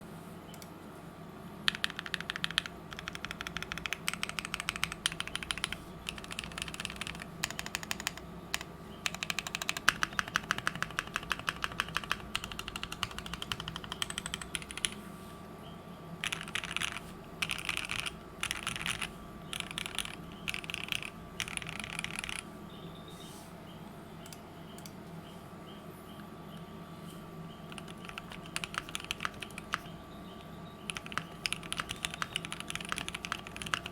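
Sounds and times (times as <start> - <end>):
typing on mechanical keyboard: 1.7 - 15.0, 16.2 - 22.4, 27.6 - 29.9, 30.9 - 33.9.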